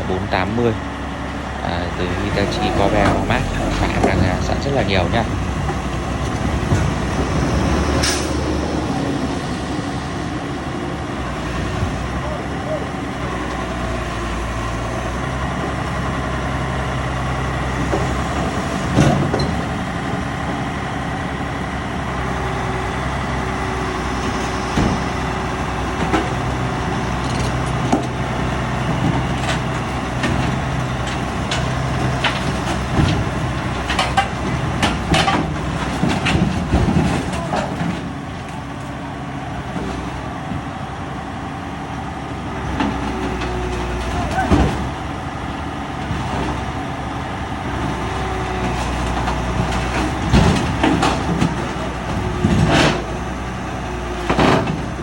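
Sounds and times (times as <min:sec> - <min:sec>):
heavy diesel engine running: 0:00.0 - 0:55.0
metallic clanks and knocks: 0:28.8 - 0:38.1.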